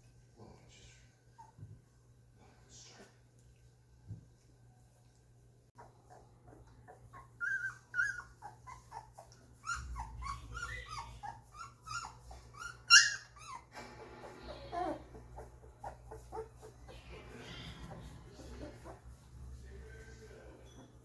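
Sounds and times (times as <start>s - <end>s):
puppies whimpering and squeaking: 5.8s - 21.0s
puppy squealing loudly: 7.2s - 13.8s.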